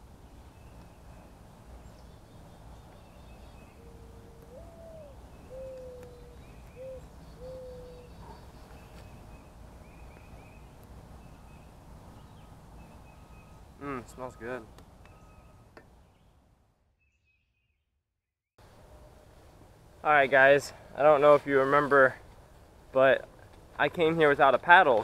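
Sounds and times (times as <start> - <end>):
faint high bird chirps: 2.0 - 10.7, 12.3 - 16.3
bird cooing: 3.6 - 8.4.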